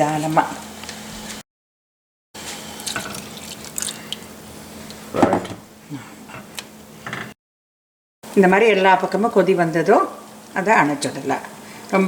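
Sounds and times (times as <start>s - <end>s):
brief vocal sound: 5.2s - 5.6s.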